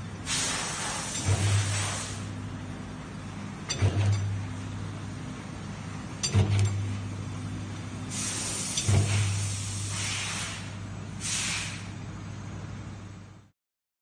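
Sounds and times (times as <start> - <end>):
machine humming: 0.0 - 10.0.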